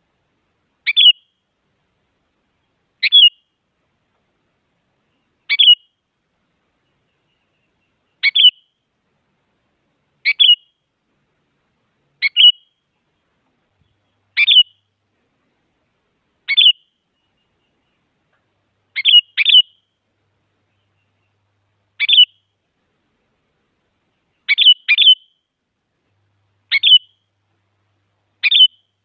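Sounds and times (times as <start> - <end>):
bird chirping calls: 0.8 - 1.4, 2.6 - 3.5, 5.0 - 6.0, 6.7 - 8.8, 10.2 - 10.8, 12.2 - 15.0, 16.4 - 18.3, 18.9 - 22.6, 24.0 - 25.5, 26.6 - 27.4, 28.4 - 29.0.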